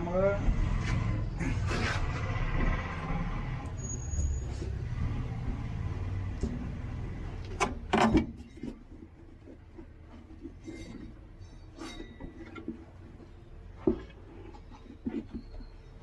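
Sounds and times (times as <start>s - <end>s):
tools clinking and rubbing: 8.0s - 16.0s.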